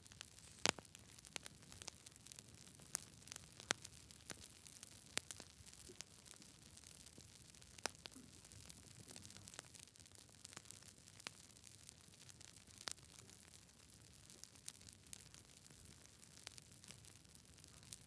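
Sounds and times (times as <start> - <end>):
campfire crackling: 0.0 - 18.0.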